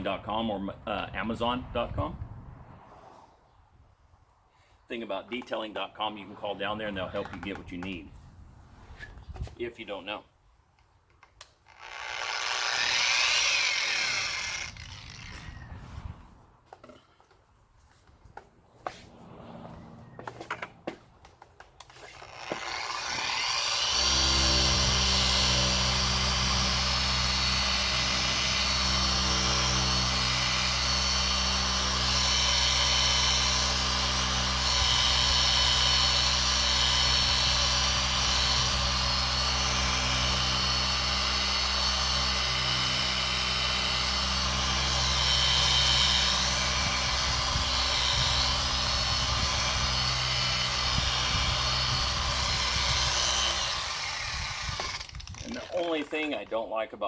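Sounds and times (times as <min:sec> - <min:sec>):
electric polisher humming: 0:22.2 - 0:55.6
polisher clicks: 0:52.8 - 0:55.9.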